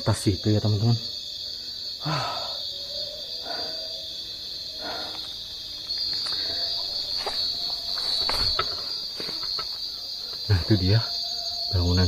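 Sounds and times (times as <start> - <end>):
crickets trilling: 0.0 - 12.0
soft rustles: 5.2 - 10.4.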